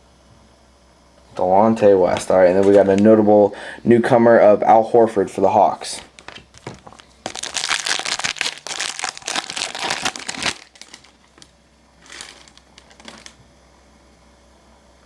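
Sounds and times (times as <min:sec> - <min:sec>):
plastic packaging crinkling: 0:02.1 - 0:03.2, 0:06.0 - 0:13.4.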